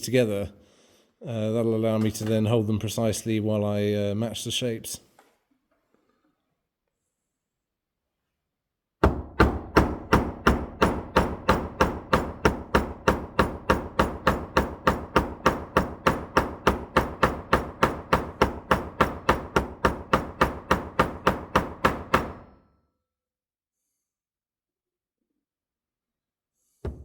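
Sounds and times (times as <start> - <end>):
small hammer striking rivet: 9.0 - 22.5.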